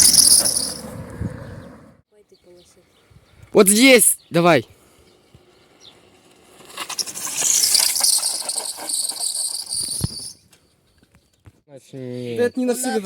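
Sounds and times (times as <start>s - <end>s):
bicycle tyre squealing: 0.0s - 0.9s, 5.5s - 10.4s.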